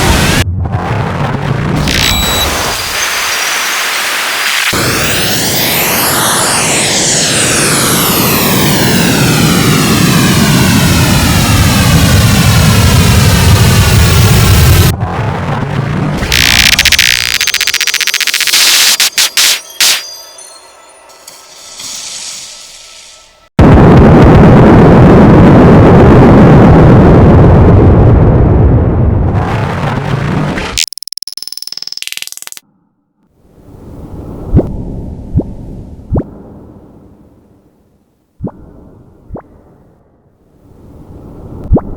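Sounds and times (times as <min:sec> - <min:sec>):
synthesizer low crackling noise burst: 0:00.0 - 0:19.4, 0:23.6 - 0:30.9
synthesized downward whoosh: 0:04.5 - 0:17.2.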